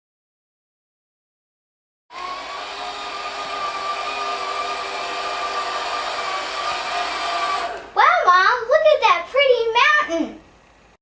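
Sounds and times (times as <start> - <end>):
machine whirring with hum: 2.1 - 8.3.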